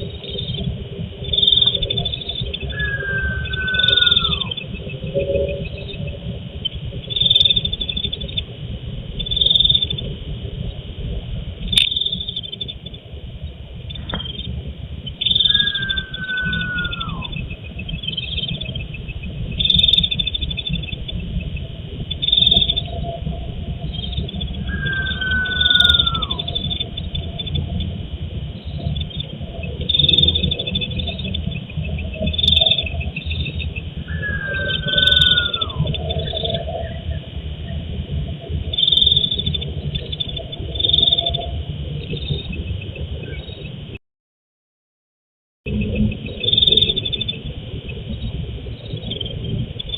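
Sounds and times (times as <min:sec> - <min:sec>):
frogs and insects chorus: 0:00.0 - 0:44.0, 0:45.7 - 0:49.9
low rumble: 0:00.0 - 0:44.0, 0:45.7 - 0:49.9
whistled call sliding downward: 0:01.3 - 0:06.0, 0:13.9 - 0:19.0, 0:23.9 - 0:27.6, 0:32.2 - 0:37.2.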